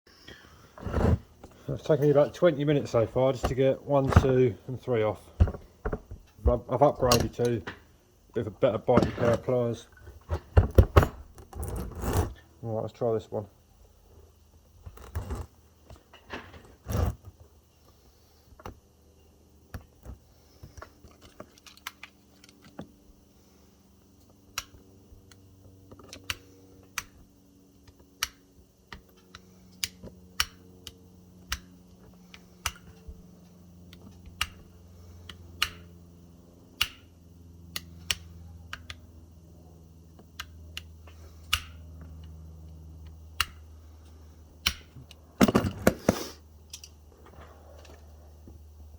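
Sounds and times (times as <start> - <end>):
pliers clicking and snapping: 27.9 - 31.7, 35.3 - 35.9, 36.8 - 37.1, 41.5 - 42.4, 43.0 - 43.6, 44.6 - 45.2.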